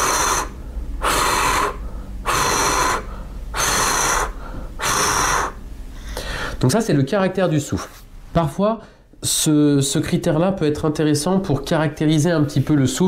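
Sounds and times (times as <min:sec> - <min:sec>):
steady hissing shhh: 0:00.0 - 0:06.6.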